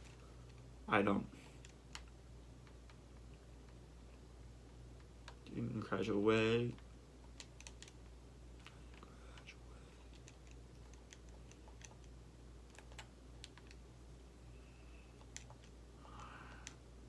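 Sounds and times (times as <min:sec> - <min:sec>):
faint irregular clicks: 0:00.0 - 0:00.7, 0:01.4 - 0:05.6, 0:06.6 - 0:14.3, 0:15.0 - 0:17.0
low steady hum: 0:00.0 - 0:17.0.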